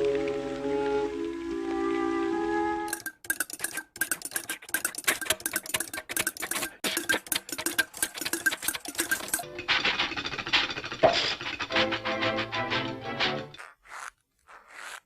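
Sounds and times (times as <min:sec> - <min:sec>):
rattle of mechanical clicks: 0:02.9 - 0:09.5.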